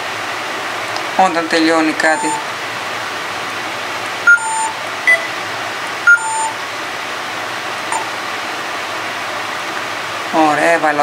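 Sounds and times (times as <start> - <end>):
sewing machine touchscreen beeps: 2.1 - 2.5, 4.3 - 5.4, 6.1 - 6.6.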